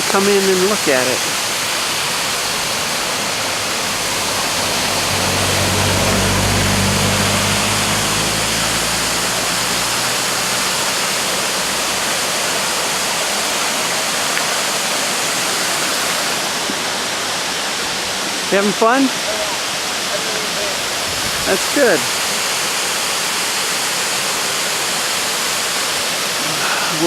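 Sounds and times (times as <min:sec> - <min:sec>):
small waterfall rushing: 0:00.0 - 0:27.0
low engine hum: 0:01.9 - 0:13.2.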